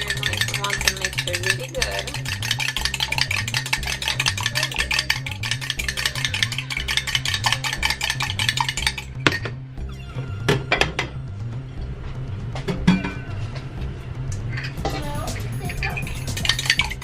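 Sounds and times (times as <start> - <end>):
whisk clicking against bowl: 0.0 - 9.2, 16.2 - 17.0.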